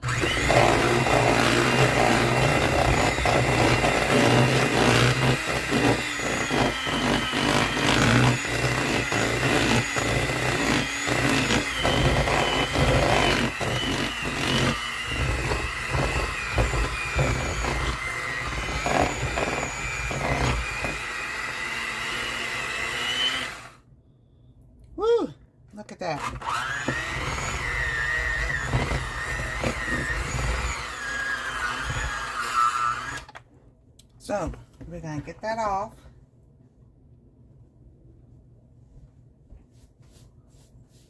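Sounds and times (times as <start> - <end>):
electric stand mixer running: 0.0 - 23.7, 26.4 - 33.2.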